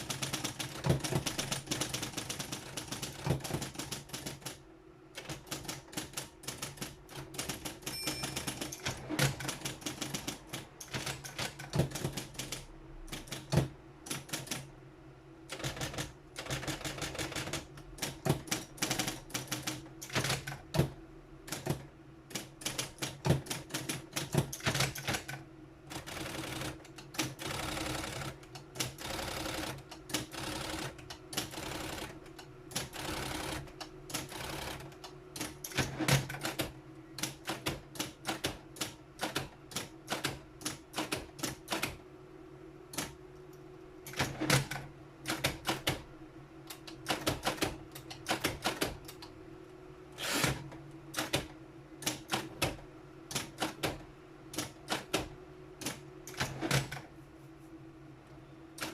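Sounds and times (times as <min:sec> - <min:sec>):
typewriter motor hum: 0:05.2 - 0:14.6, 0:22.4 - 0:42.0, 0:50.1 - 0:57.0
typewriter key strikes: 0:07.9 - 0:09.3.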